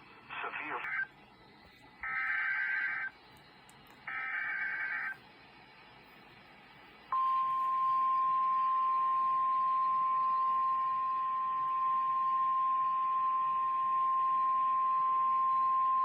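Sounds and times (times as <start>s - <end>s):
faint radio hiss: 0.0s - 11.7s
steady warning alarm tone: 7.1s - 16.0s.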